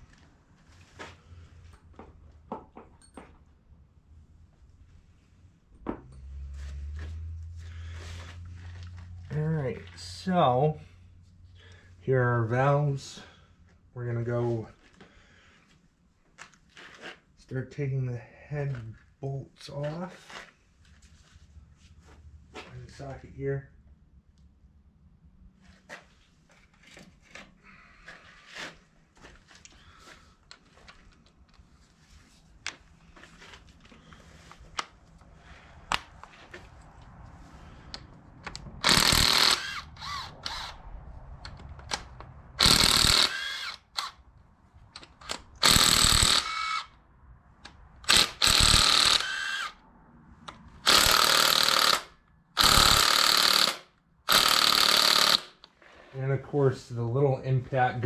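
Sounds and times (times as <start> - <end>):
impact gun hammering on bolts: 50.9 - 55.6.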